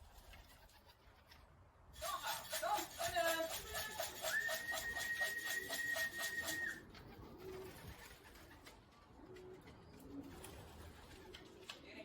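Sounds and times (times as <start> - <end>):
pigeons cooing: 5.4 - 11.6.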